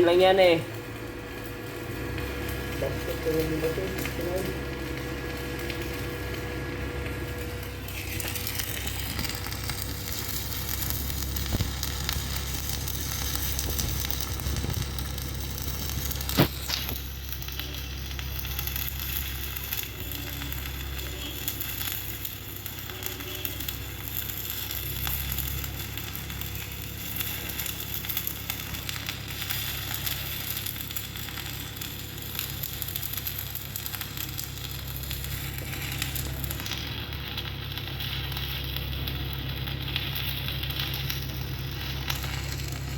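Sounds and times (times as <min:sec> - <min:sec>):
welding arc sizzling crackle: 0:00.0 - 0:42.9
sharp crack: 0:07.9 - 0:17.5.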